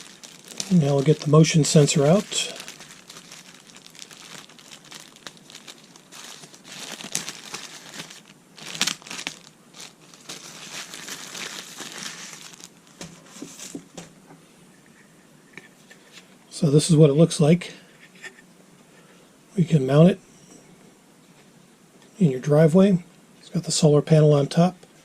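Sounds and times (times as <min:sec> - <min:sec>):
plastic packaging crinkling: 0:00.0 - 0:14.0.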